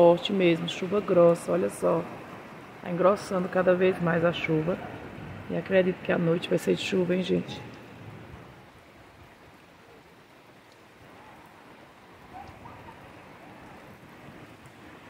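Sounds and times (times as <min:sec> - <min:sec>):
heavy rain on a roof: 0:00.0 - 0:15.0.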